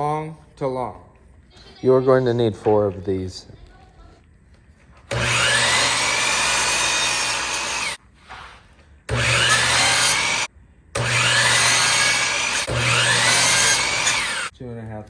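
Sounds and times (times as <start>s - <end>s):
power saw cutting wood: 5.1s - 8.0s, 9.1s - 14.5s.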